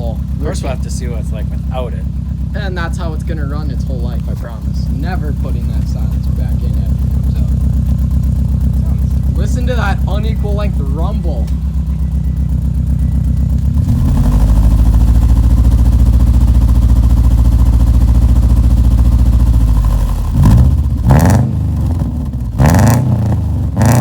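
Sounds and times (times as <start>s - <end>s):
car engine revving: 0.0s - 24.0s.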